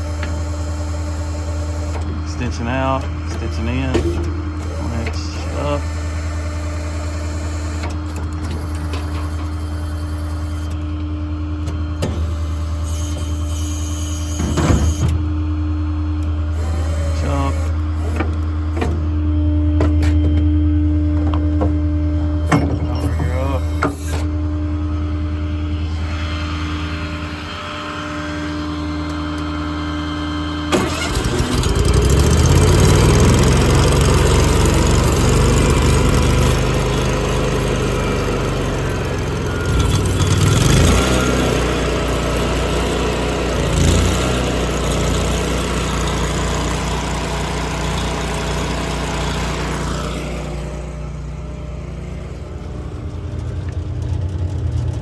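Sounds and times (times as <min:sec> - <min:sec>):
engine idling: 0:22.0 - 0:55.0
engine starting and revving: 0:30.6 - 0:51.0.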